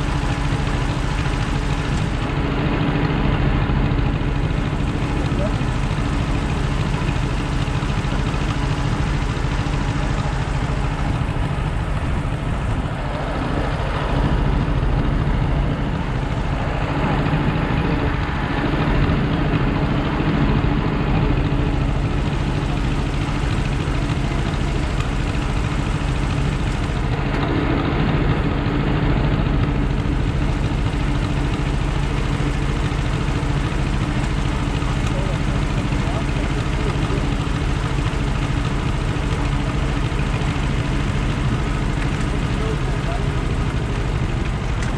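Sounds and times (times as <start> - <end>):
engine running: 0.0 - 44.9.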